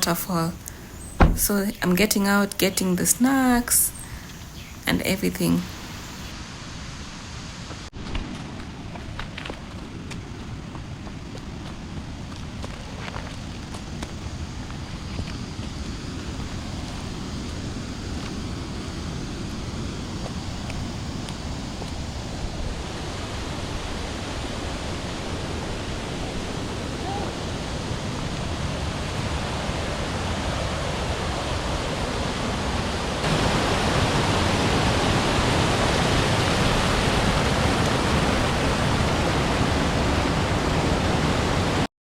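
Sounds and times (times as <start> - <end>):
waterfall rushing: 33.2 - 41.8.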